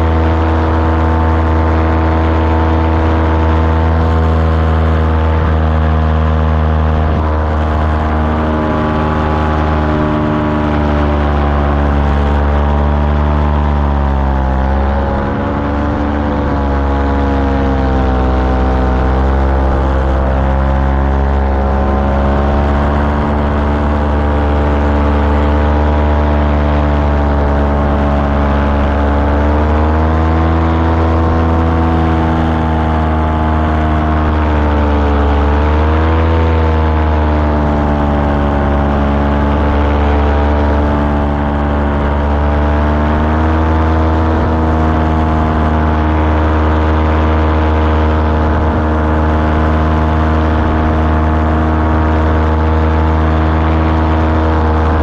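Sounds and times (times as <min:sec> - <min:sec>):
constant rushing noise: 0:00.0 - 0:55.0
small aircraft engine running: 0:00.0 - 0:55.0.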